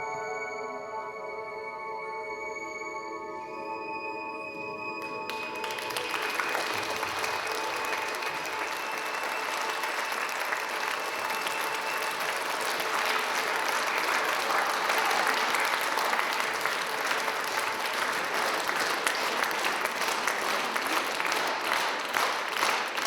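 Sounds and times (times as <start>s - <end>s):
audience applauding: 5.0s - 23.0s.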